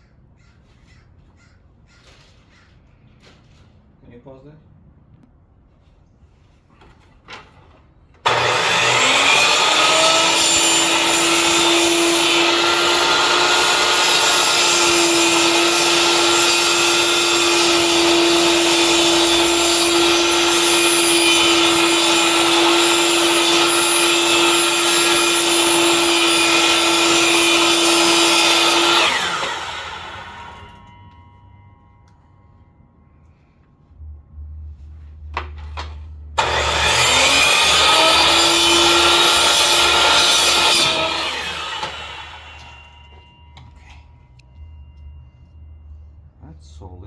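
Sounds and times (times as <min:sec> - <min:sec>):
power tool cutting plastic: 0:08.2 - 0:30.8, 0:36.4 - 0:42.9.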